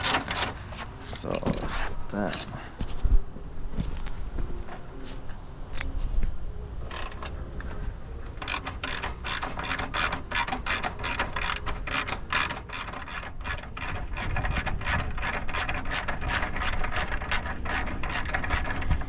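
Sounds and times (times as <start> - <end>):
ratchet wrench clicking: 6.9 - 7.4, 8.3 - 19.0.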